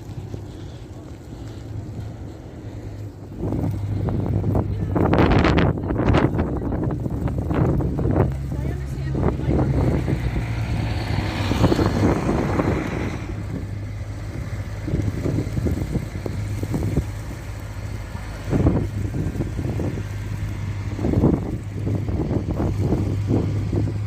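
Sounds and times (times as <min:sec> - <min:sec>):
car passing: 0:00.0 - 0:24.0
low traffic hum: 0:00.0 - 0:24.0.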